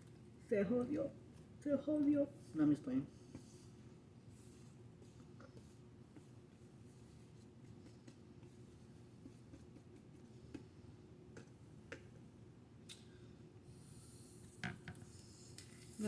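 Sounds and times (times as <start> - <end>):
low room hum: 0.0 - 16.0
faint clicks and taps: 9.2 - 10.7, 11.3 - 12.3.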